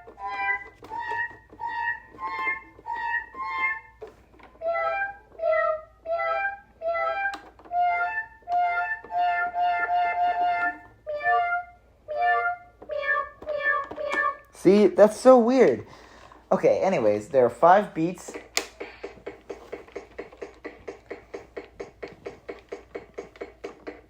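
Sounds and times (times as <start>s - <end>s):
toy keyboard electronic notes: 0.0s - 14.5s.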